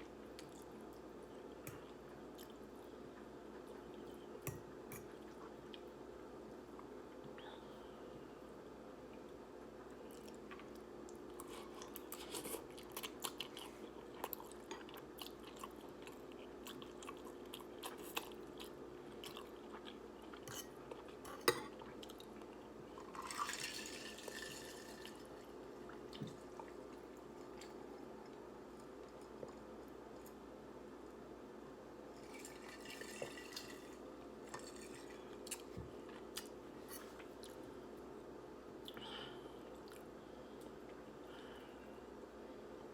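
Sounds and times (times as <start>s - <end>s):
low steady hum: 0.0s - 42.9s.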